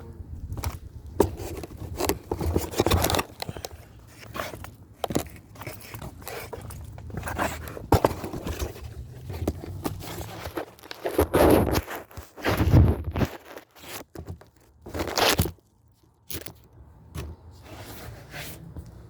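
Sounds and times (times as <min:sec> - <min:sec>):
objects scraping and knocking: 0:00.6 - 0:15.6.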